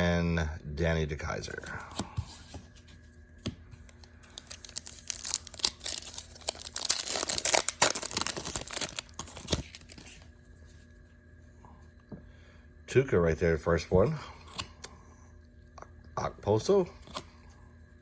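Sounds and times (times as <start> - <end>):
wrapper tearing and crinkling: 4.3 - 10.2.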